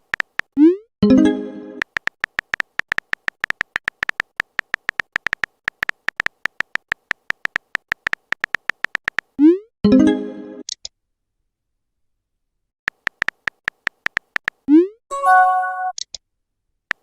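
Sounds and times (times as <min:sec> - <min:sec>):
phone keyboard typing clicks: 0:00.0 - 0:00.6, 0:01.8 - 0:09.4, 0:12.9 - 0:14.7
electronic message chime: 0:15.1 - 0:16.0.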